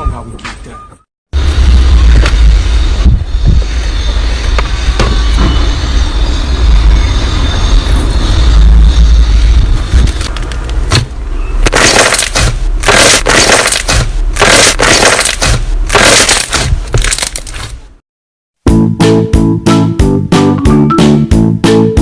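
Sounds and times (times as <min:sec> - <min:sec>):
slime crackling crunches: 0:11.7 - 0:17.6.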